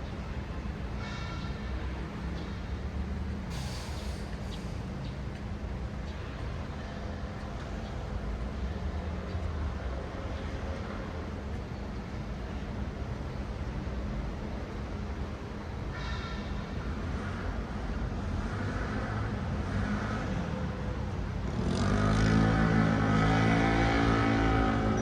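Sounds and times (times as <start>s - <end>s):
traffic engines rumbling: 0.0s - 25.0s
short hiss: 3.5s - 4.7s.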